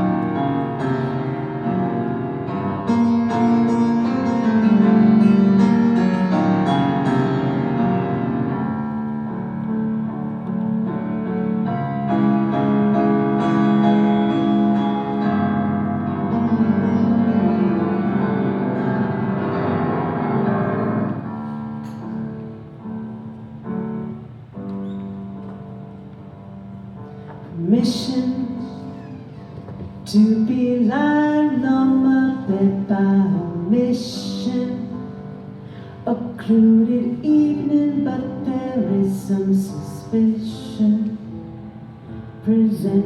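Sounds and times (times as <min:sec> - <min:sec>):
keyboard chords: 0:00.0 - 0:24.7.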